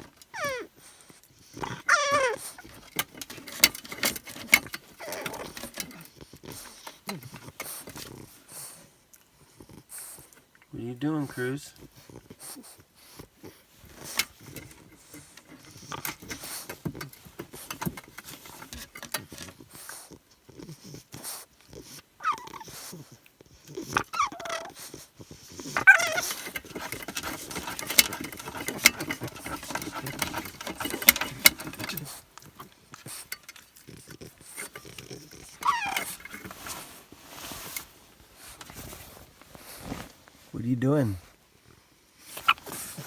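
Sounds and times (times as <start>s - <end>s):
puppy whining: 0.0s - 10.6s, 11.2s - 40.2s, 42.2s - 43.0s
scuffling and clicking: 1.8s - 8.2s, 13.8s - 19.7s, 25.8s - 41.2s.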